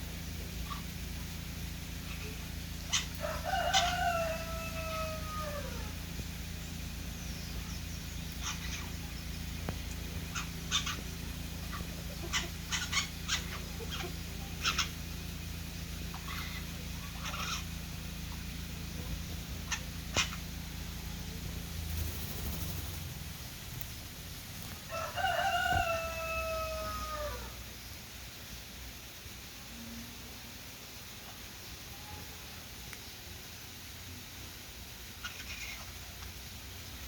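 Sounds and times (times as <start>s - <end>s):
jays calling: 0.0s - 24.0s, 35.2s - 36.4s
steady low hum: 0.0s - 37.0s.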